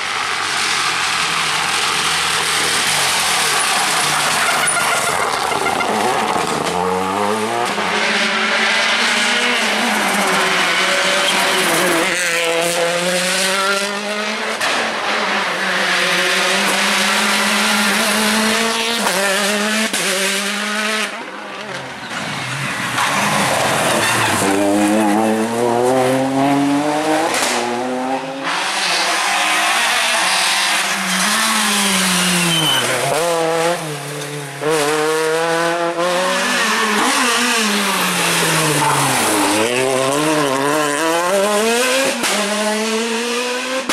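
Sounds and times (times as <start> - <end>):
rally car engines revving: 0.0 - 43.9
tyres squealing: 29.1 - 33.2.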